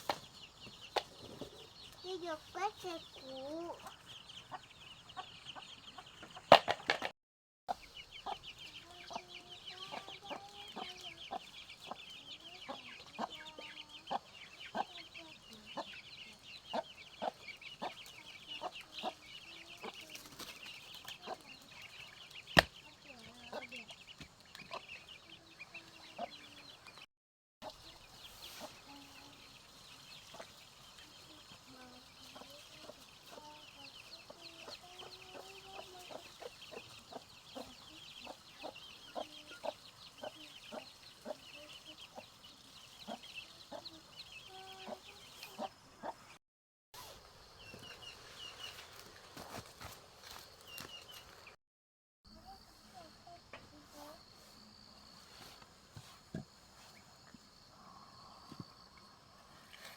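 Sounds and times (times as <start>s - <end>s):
chickens clucking: 0.0s - 7.1s, 7.7s - 46.4s.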